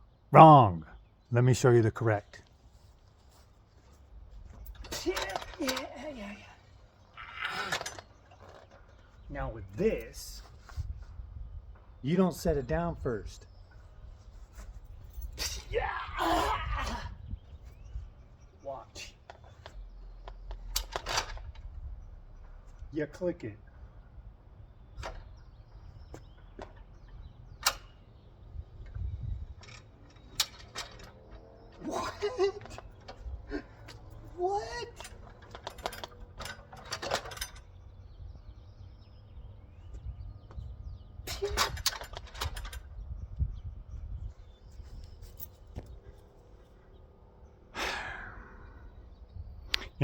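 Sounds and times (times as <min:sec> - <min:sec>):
sharp metal clicks: 0:19.3 - 0:21.8, 0:26.4 - 0:28.2, 0:29.6 - 0:37.8, 0:41.2 - 0:43.0.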